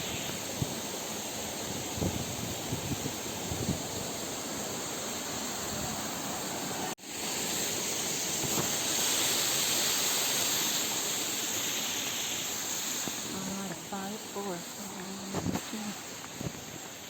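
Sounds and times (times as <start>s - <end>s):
waterfall rushing: 0.0s - 17.0s.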